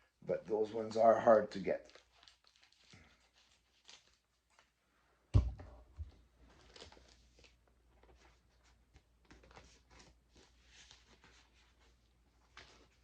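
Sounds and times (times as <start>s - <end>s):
packaging rustling and crinkling: 1.7s - 4.7s, 6.4s - 13.0s.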